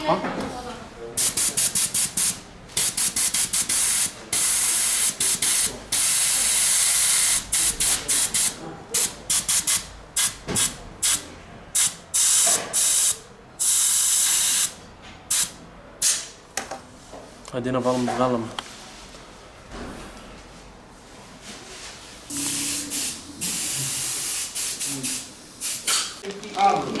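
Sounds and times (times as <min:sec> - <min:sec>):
compressed air hissing from blow gun: 0:22.3 - 0:26.1.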